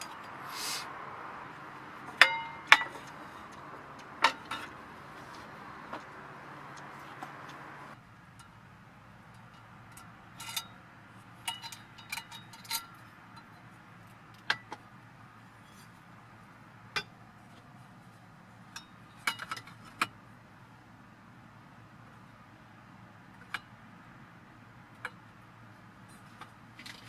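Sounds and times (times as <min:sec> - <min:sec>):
cookware clinking: 0:02.2 - 0:03.0.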